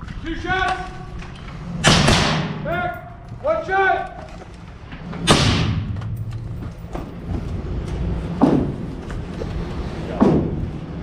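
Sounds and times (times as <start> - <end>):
rifle shots with echo: 1.8 - 2.7, 5.2 - 6.1
steady low rumble: 4.6 - 11.0.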